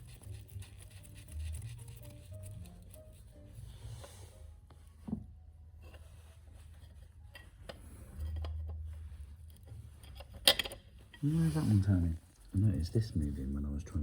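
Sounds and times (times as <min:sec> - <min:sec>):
metal tools clicking and tapping: 0:10.0 - 0:10.9.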